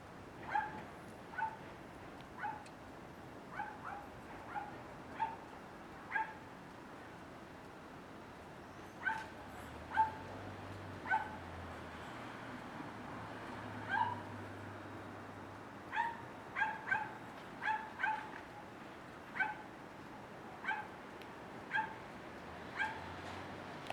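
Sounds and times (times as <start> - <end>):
small dog yipping: 0.5 - 0.8, 6.1 - 6.4, 9.0 - 9.3, 9.9 - 10.2, 11.1 - 11.4, 13.9 - 14.2, 15.9 - 18.3, 19.4 - 19.6, 20.6 - 20.9, 21.7 - 22.0, 22.8 - 23.0.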